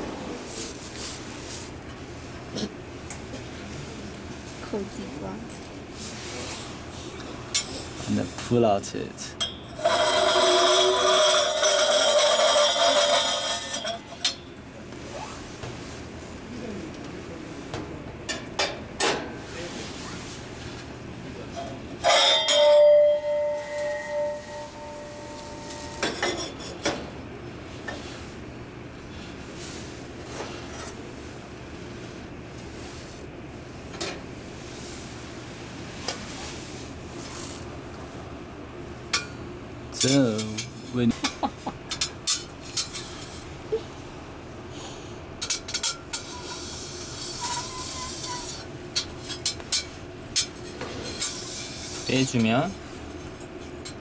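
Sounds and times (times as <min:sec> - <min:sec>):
glassware ringing bell-like: 0:22.0 - 0:26.1
glass clink: 0:22.0 - 0:26.6.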